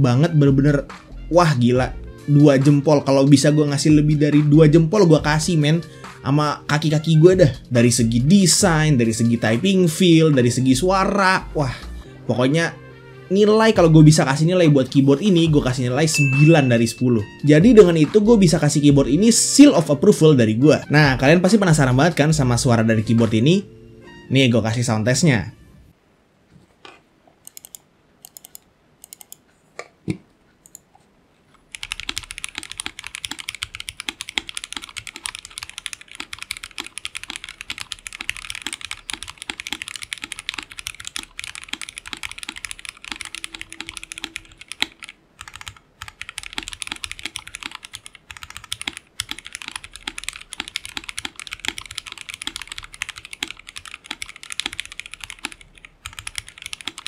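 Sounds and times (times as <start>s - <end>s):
mechanical keyboard typing: 27.4s - 29.4s, 31.7s - 57.0s.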